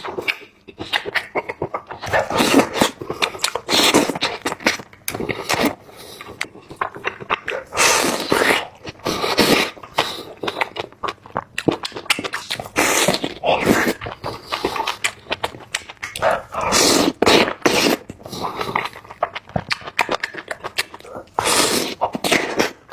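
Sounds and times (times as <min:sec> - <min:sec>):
chewing and wet mouth noises: 0:00.0 - 0:22.9
sharp mouth clicks: 0:13.6 - 0:18.0.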